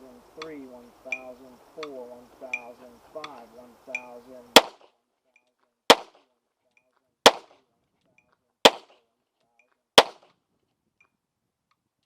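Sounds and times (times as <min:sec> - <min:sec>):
handgun shots: 0:04.5 - 0:04.9, 0:05.9 - 0:06.2, 0:07.3 - 0:07.6, 0:08.6 - 0:09.0, 0:10.0 - 0:10.3.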